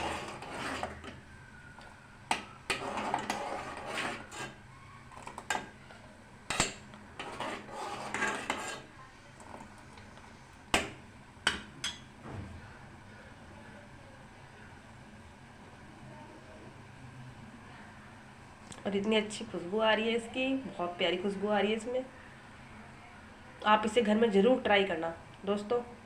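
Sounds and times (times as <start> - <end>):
spoon scraping a cooking pot: 0.0 - 1.3, 2.3 - 10.9.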